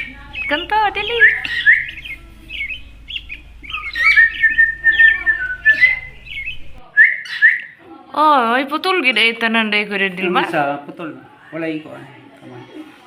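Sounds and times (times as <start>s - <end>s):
bird chirping and whistling: 0.0s - 7.8s.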